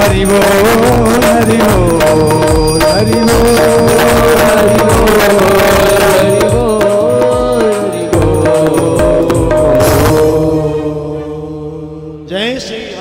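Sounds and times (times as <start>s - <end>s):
drum and percussion beats: 0.0s - 11.1s
chant singing: 0.2s - 13.0s.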